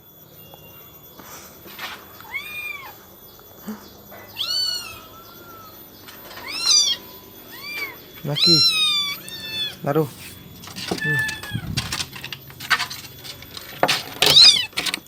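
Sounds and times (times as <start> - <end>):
kittens meowing: 2.2 - 3.0, 4.1 - 11.9, 14.2 - 15.0.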